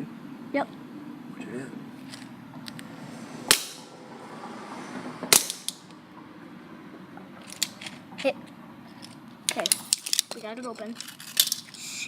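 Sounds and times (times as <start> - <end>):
small rattle: 7.4 - 12.0.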